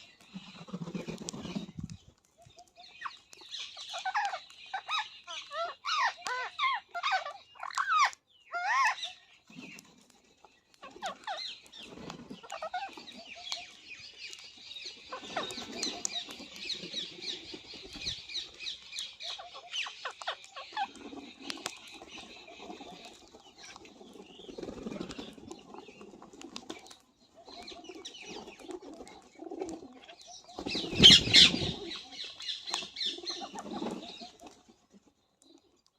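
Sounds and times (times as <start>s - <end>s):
wings flapping: 0.0s - 4.3s, 9.5s - 35.0s
parakeets calling and chirping: 0.0s - 9.8s, 10.4s - 26.0s, 30.0s - 34.4s
pigeons cooing: 10.8s - 14.0s, 14.8s - 35.7s.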